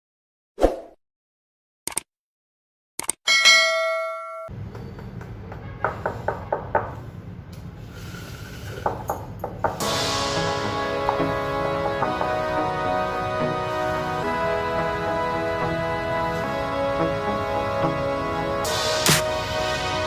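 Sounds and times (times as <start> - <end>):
short clicks: 1.9 - 2.1, 3.0 - 3.2
bell-like ding: 3.3 - 4.5.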